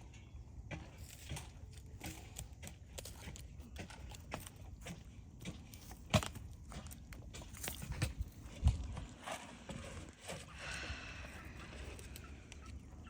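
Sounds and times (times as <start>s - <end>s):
hooves knocking and scuffing: 0.0s - 13.0s.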